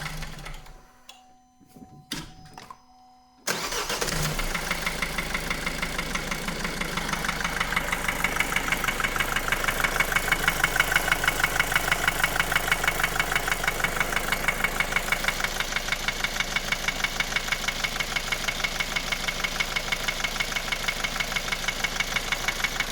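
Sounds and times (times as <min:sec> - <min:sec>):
diesel engine idling: 0:03.5 - 0:22.9.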